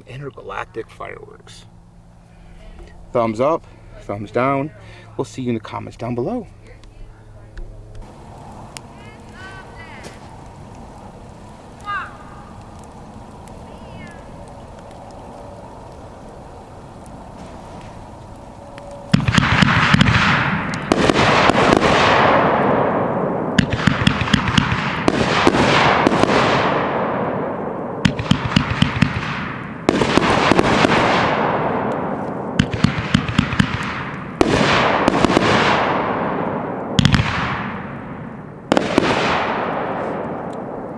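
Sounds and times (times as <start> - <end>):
firework crackling: 1.8 - 40.9
firework shots: 7.6 - 40.9
firework hiss: 8.0 - 22.3.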